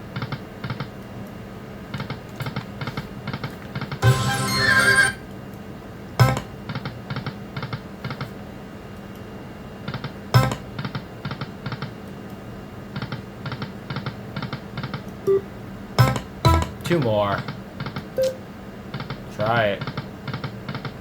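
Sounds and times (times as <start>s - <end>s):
machine hum: 6.2s - 6.7s, 15.2s - 18.8s
slot machine spin hit: 10.4s - 10.6s, 16.0s - 17.0s
short clicking tones: 18.2s - 18.4s.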